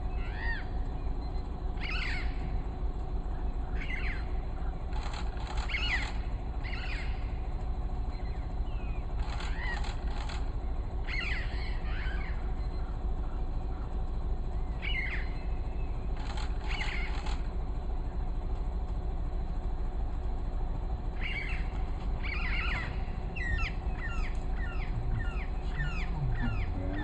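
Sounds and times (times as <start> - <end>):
wild birds calling: 0.0 - 18.3, 19.4 - 27.0
low rumble: 17.2 - 27.0.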